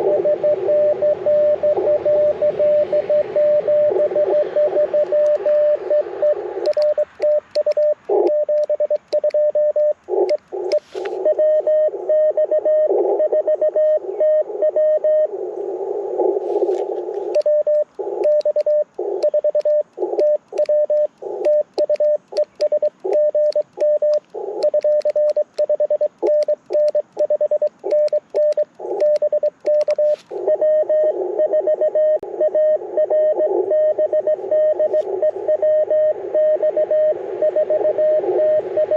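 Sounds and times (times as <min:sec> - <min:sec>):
morse code beeps: 0:00.0 - 0:15.3, 0:16.6 - 0:38.9
radio band noise hiss: 0:01.6 - 0:12.2, 0:12.9 - 0:31.5, 0:32.2 - 0:38.9
paddle key clicking: 0:06.6 - 0:09.4, 0:17.4 - 0:30.0.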